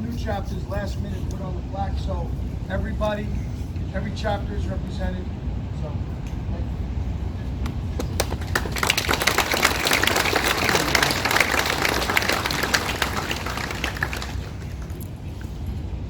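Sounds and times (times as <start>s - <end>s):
crowd applauding: 7.6s - 15.4s.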